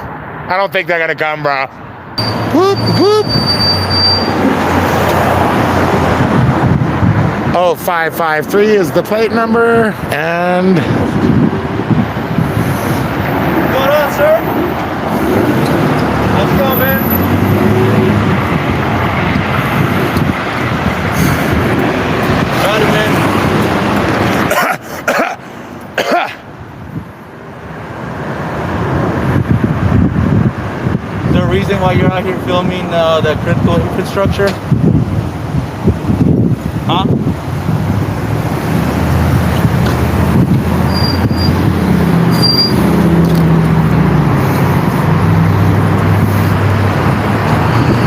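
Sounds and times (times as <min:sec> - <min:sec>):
road traffic noise: 0:00.0 - 0:48.0
vehicle engine humming: 0:01.9 - 0:48.0
person coughing: 0:24.5 - 0:25.4, 0:26.0 - 0:26.4.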